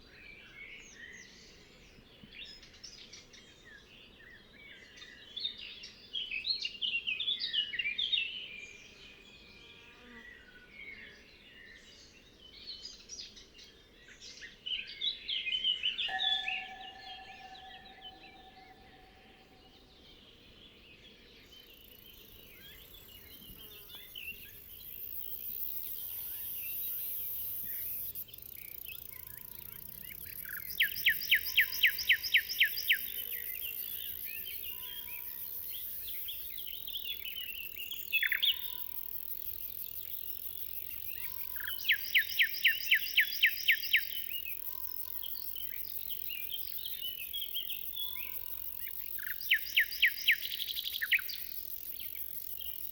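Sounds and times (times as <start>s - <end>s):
birds chirping: 15.8s - 20.4s, 21.0s - 52.9s
high insect hiss: 21.6s - 52.9s.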